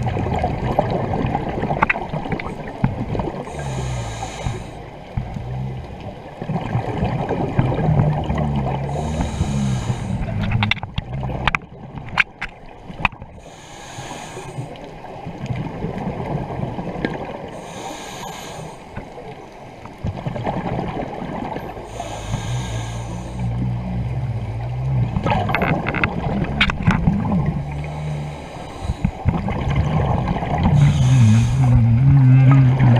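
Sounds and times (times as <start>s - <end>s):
underwater rushing water: 0.0s - 32.9s
regulator breathing hiss: 3.5s - 4.8s, 8.9s - 10.2s, 13.4s - 14.8s, 17.6s - 19.0s, 21.9s - 23.4s, 30.8s - 31.8s.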